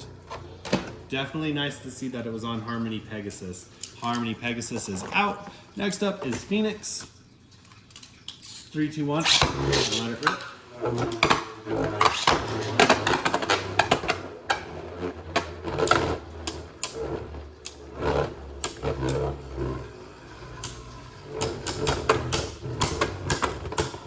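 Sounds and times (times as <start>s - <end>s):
spinning tops whirring: 9.2s - 24.0s.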